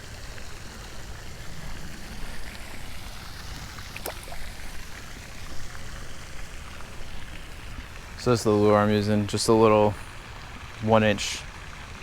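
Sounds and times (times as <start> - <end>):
running water: 0.0 - 12.0.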